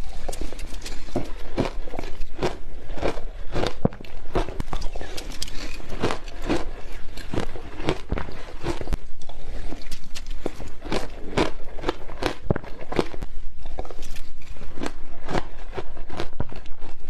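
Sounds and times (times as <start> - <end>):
ice crunching while chewed: 0.0 - 17.0.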